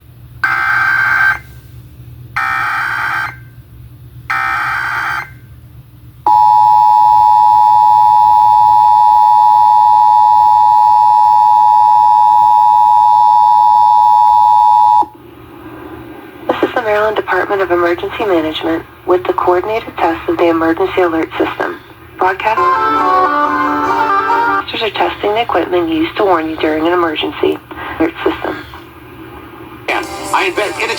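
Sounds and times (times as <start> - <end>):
two-tone attention signal: 22.5 - 24.6.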